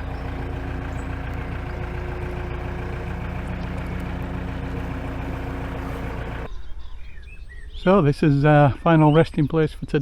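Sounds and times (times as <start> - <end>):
boat engine rumbling: 0.0 - 6.5.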